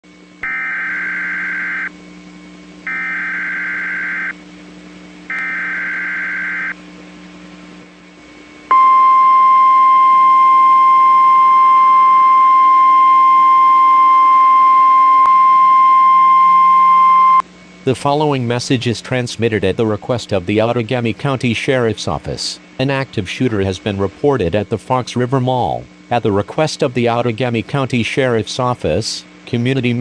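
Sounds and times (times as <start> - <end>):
buzzy digital data bursts: 0.4 - 1.9, 2.9 - 4.3, 5.3 - 6.8
steady warning alarm tone: 0.4 - 2.0, 2.8 - 4.4, 5.3 - 6.8, 8.7 - 17.4.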